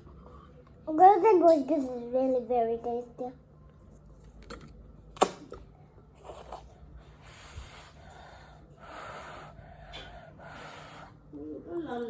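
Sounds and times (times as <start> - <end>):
child eating noodles: 4.2 - 12.0
airy breathing and sniffing: 6.2 - 11.3.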